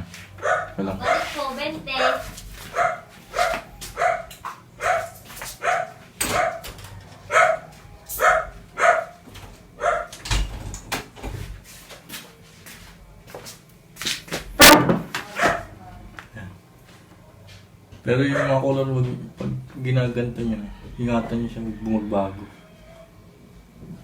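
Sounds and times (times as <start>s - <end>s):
dog barking: 0.4s - 9.2s, 9.8s - 10.2s, 15.2s - 15.8s, 18.2s - 18.6s.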